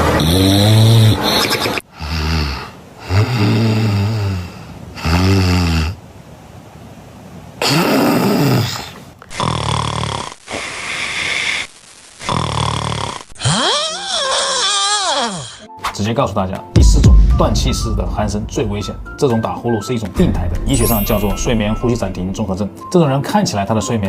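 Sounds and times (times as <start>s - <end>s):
choking snoring: 0.0s - 4.4s, 7.6s - 10.7s
people snoring: 0.0s - 6.0s, 7.6s - 15.7s.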